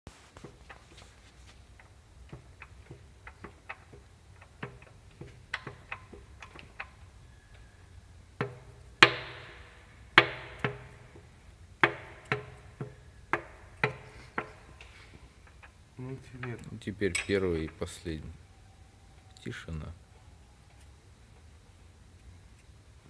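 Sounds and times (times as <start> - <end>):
engine piston knocking: 1.8 - 7.6, 8.4 - 14.8.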